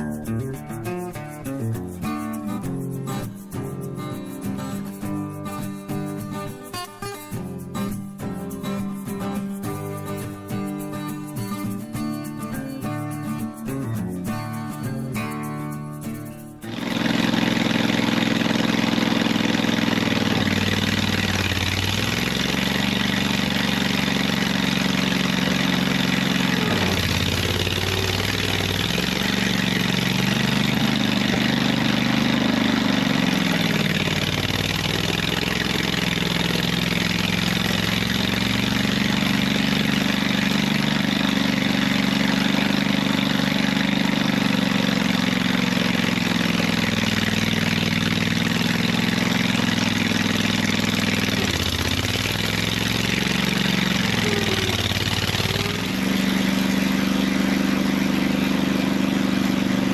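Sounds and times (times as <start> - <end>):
skid steer engine under load: 16.6 - 59.9.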